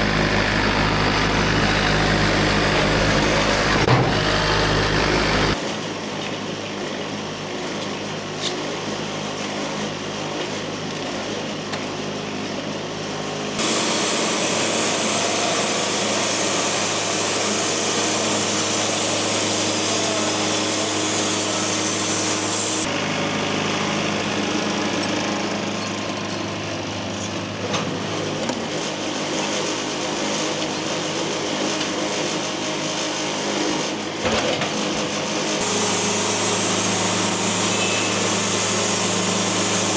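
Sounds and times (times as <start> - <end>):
sawmill engine humming: 0.0 - 5.6, 13.6 - 31.8, 35.0 - 39.9
band blade sawing wood: 13.6 - 22.9, 35.6 - 39.9.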